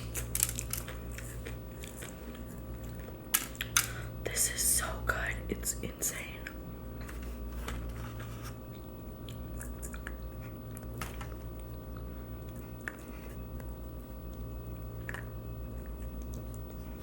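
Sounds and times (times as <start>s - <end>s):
crunchy chewing: 0.0s - 3.8s, 8.6s - 17.0s.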